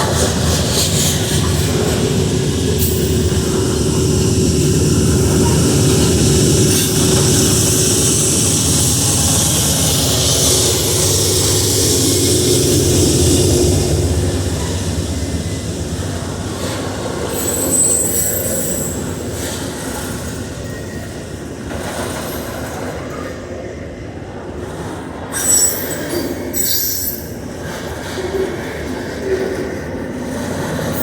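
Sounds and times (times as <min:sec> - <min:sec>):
train cars rolling on rails: 0:00.0 - 0:31.0
high wheel squeal: 0:17.3 - 0:19.2, 0:25.3 - 0:27.4
short wheel screeches: 0:25.3 - 0:27.3.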